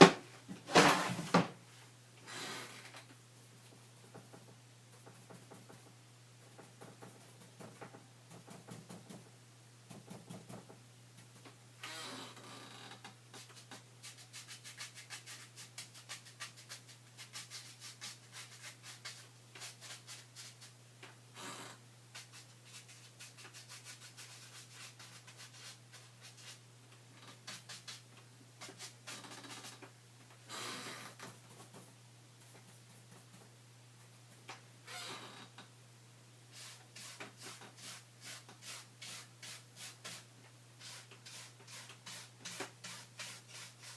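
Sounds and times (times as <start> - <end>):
paintbrush rubbing strokes: 22.1 - 26.6, 36.5 - 43.9.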